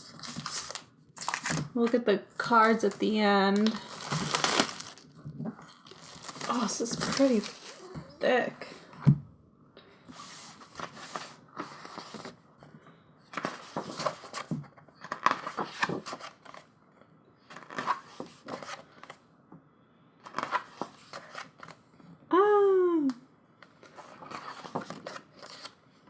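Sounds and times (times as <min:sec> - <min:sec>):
paper rustling and page flaps: 0:00.0 - 0:08.0, 0:10.2 - 0:12.4, 0:13.4 - 0:16.7, 0:17.5 - 0:19.2, 0:23.8 - 0:25.8.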